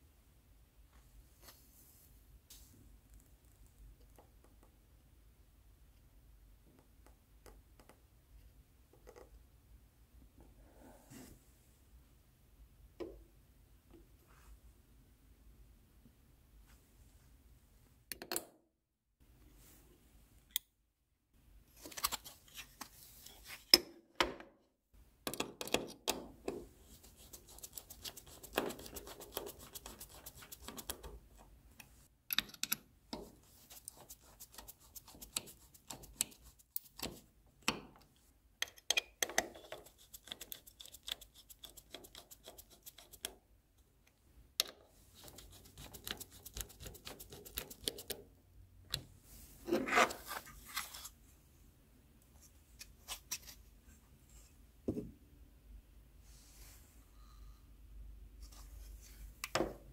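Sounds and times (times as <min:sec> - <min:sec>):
parts clicking and scraping: 0:30.2 - 0:34.0.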